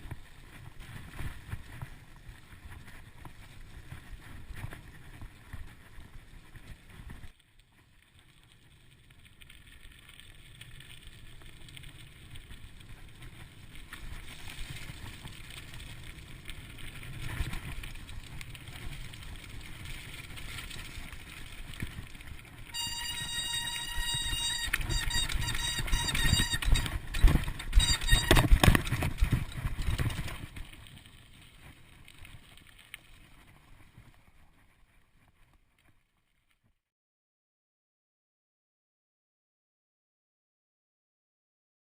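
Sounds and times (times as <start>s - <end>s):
bike tyres rumbling on trail: 0.0s - 36.4s
high steady whine: 22.7s - 30.0s.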